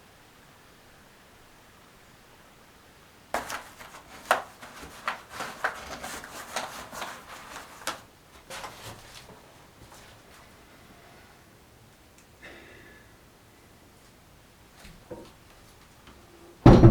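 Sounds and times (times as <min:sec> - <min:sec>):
knocks and clicks of handling: 0:03.4 - 0:09.3.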